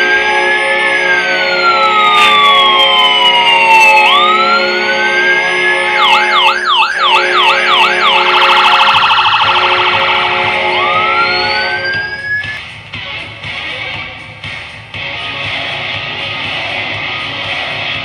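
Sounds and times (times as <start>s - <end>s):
electronic siren: 0.0s - 12.7s
low horn chord: 9.3s - 12.2s.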